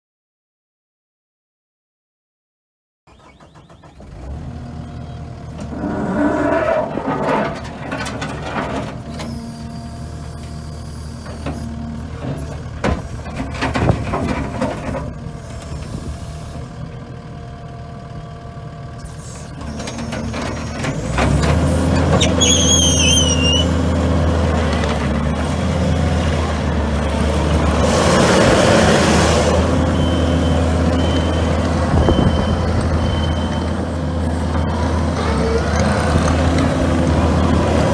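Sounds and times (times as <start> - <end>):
diesel engine running: 3.1 - 37.9
knocks and clanks: 5.6 - 9.3, 12.2 - 15.2
backup alarm beeping: 29.9 - 33.8.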